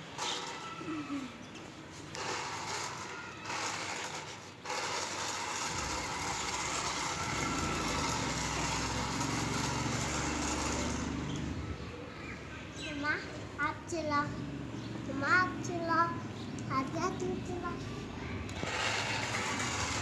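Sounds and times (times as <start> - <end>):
toy car electric motor whirring: 0.0 - 11.9, 17.2 - 20.0.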